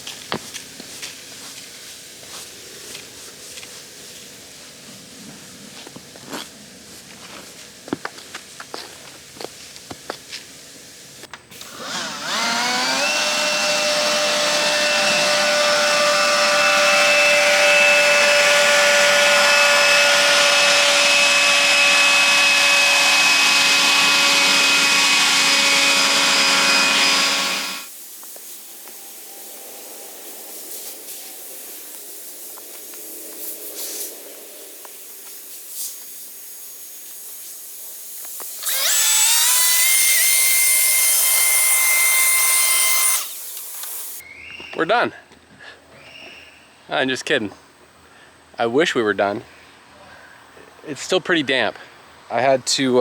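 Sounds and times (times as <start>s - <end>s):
power tool motor whining: 11.5s - 27.9s, 38.4s - 44.2s.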